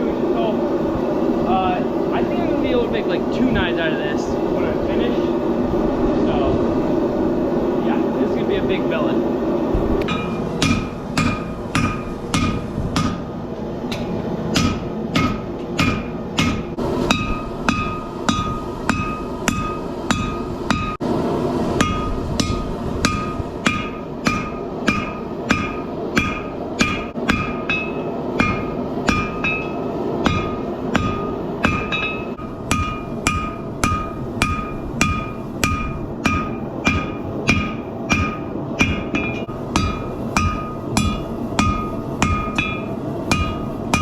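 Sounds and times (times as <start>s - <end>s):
steady rushing noise: 0.0s - 44.0s
hammer striking steel on anvil: 10.0s - 13.3s, 13.9s - 21.0s, 21.8s - 44.0s.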